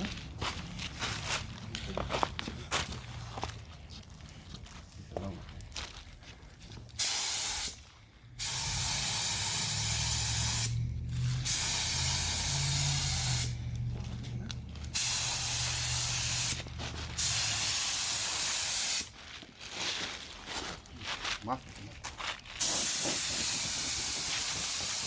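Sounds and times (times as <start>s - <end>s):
spray paint hissing: 7.0s - 7.8s, 8.4s - 13.6s, 14.9s - 19.2s, 22.6s - 25.0s.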